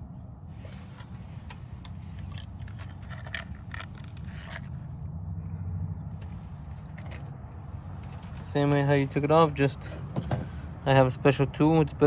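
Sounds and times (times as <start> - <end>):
spark plugs and packaging handled: 0.8 - 4.7.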